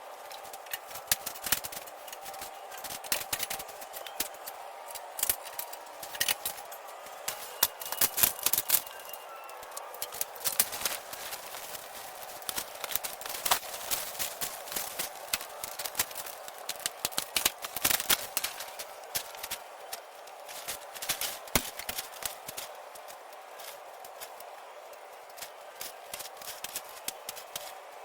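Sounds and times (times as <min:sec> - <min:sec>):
steady background hum: 0:00.0 - 0:28.0
sharp clicks and clatters: 0:00.2 - 0:27.8.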